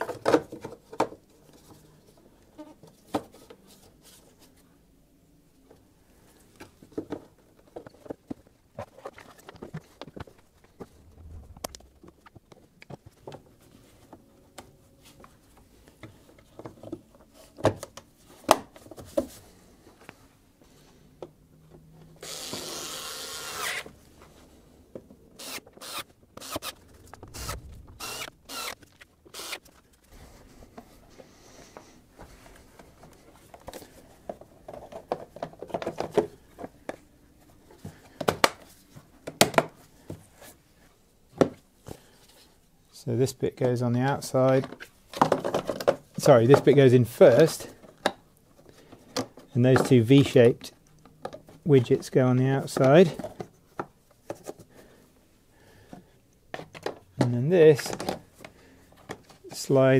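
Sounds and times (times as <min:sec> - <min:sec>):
rasping noise: 0:25.8 - 0:30.2.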